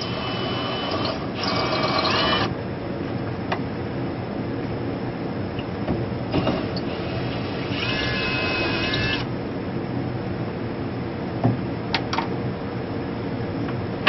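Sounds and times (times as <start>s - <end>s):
drill whirring: 0.0s - 2.6s, 6.3s - 9.3s
steady background noise: 0.0s - 14.0s.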